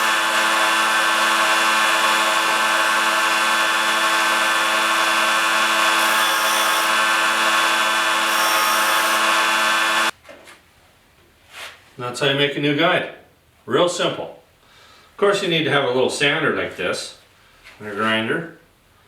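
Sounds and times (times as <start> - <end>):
electric grinder grinding metal: 0.0 - 10.1.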